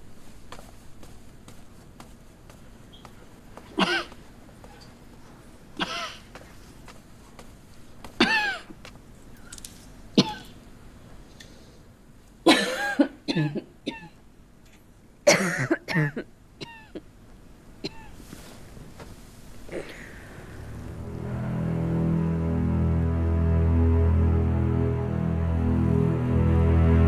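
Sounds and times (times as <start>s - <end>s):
woman coughing: 12.5s - 14.2s, 15.3s - 17.0s, 17.8s - 18.2s.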